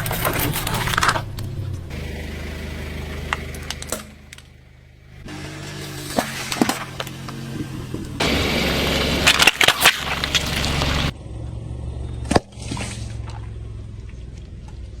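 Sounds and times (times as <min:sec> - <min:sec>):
car tyre crushing crunchy toys: 0:00.0 - 0:11.2, 0:12.1 - 0:15.0
low engine hum: 0:00.0 - 0:15.0
sharp crack: 0:08.0 - 0:11.2.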